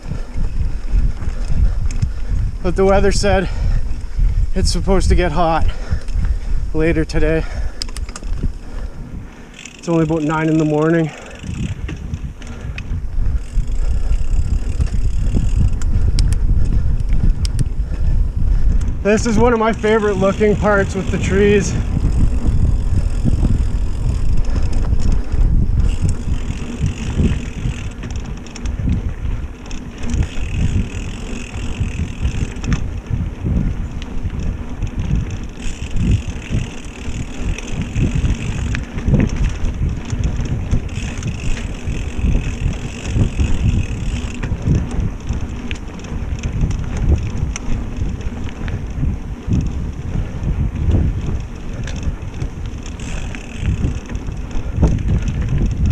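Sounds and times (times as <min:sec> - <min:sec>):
bike tyre noise: 0:00.0 - 0:55.9
wind rumbling on microphone: 0:00.0 - 0:55.9
bike knocks and rattles: 0:09.5 - 0:55.9.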